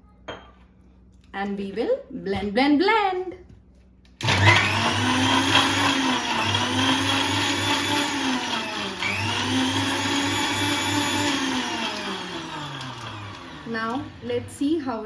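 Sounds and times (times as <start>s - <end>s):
motor winding down: 4.2s - 14.3s
mixer grinder whining: 4.2s - 15.0s.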